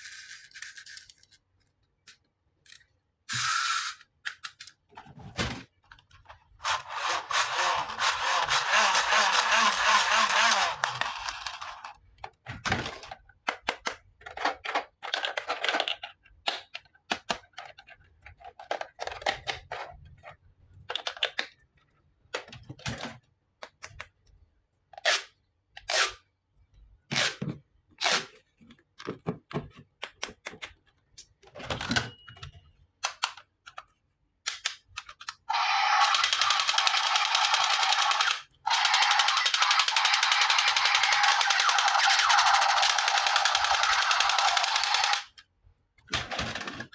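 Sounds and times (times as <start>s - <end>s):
plastic toy pieces clicking: 0.0s - 4.8s, 6.7s - 12.0s, 13.0s - 19.9s, 33.0s - 45.5s.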